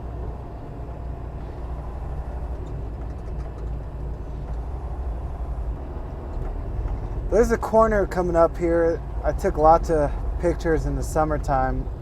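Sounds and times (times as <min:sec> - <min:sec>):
truck engine and road rumble: 0:00.0 - 0:12.0.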